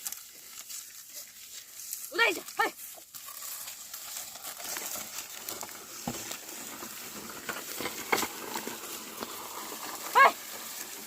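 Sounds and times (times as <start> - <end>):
plough rustling through soil: 0.0 - 11.0
small crackles and knocks: 0.0 - 11.0
person shouting: 10.2 - 10.4.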